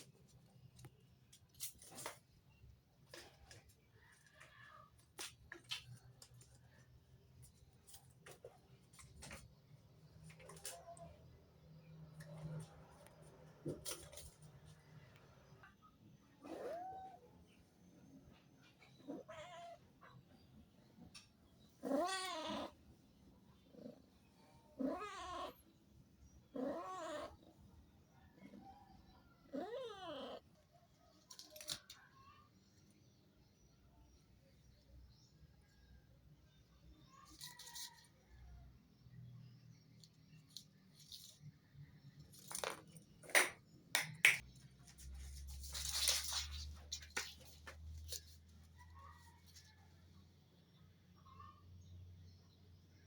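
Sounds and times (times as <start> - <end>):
kitten tapping and clicking: 43.2 - 44.4
scratchy rustle: 44.8 - 49.8.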